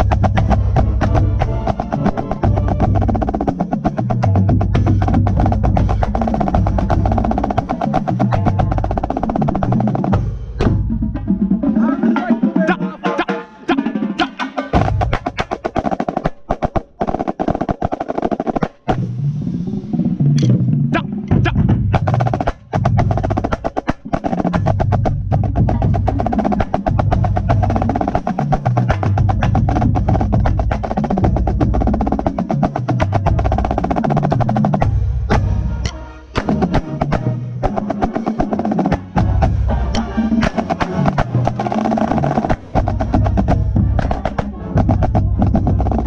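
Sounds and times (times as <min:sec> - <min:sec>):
marching snare drum rolls: 0:00.0 - 0:19.1, 0:21.3 - 0:46.0
marching band brass and drums: 0:00.0 - 0:19.2, 0:20.4 - 0:46.0.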